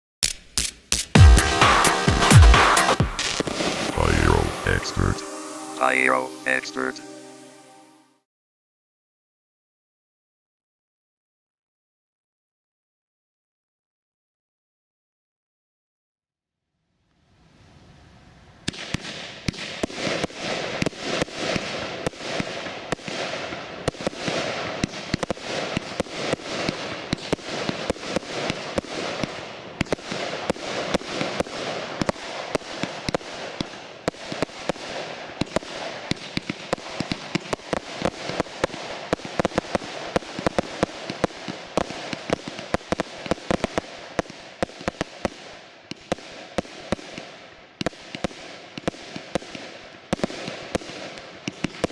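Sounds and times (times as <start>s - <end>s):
fireworks crackling: 0.2s - 7.7s, 18.6s - 51.9s
fireworks reports: 0.9s - 8.0s, 18.9s - 47.2s.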